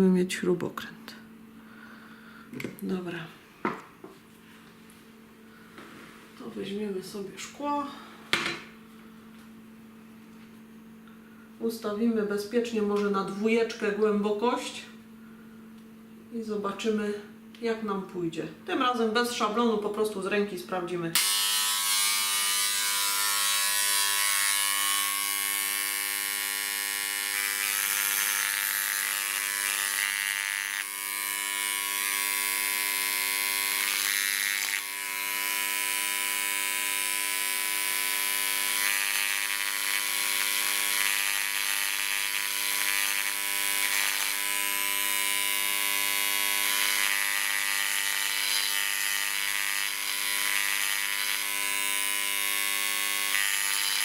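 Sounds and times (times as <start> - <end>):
engraver buzzing: 21.2 - 54.0.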